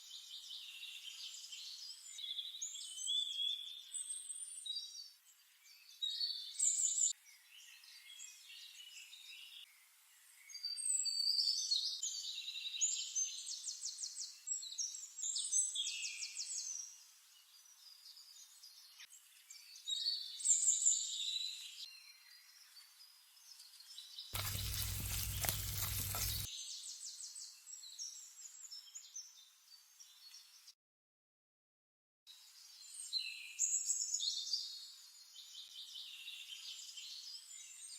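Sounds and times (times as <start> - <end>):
birds singing: 24.4 - 26.5.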